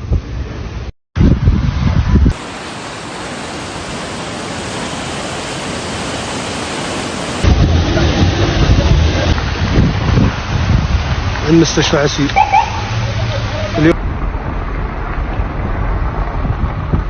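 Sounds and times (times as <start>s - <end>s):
wind gusts buffeting microphone: 1.2s - 17.0s
heavy downpour hiss: 1.7s - 14.0s.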